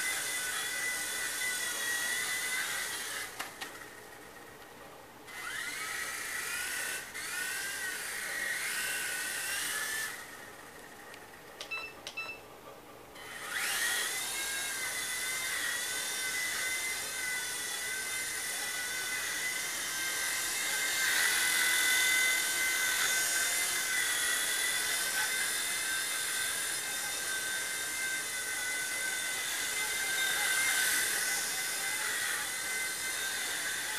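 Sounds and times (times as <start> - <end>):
small electric motor whining: 0.0 - 4.4, 5.3 - 11.3, 13.2 - 33.9.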